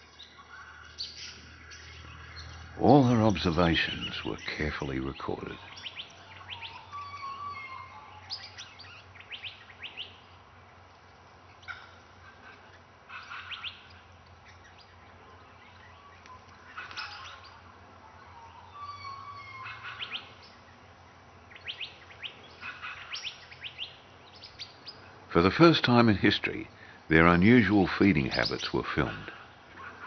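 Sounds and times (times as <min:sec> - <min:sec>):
parrots chirping: 0:00.0 - 0:10.2, 0:15.8 - 0:25.6
faint low hum: 0:00.0 - 0:30.0.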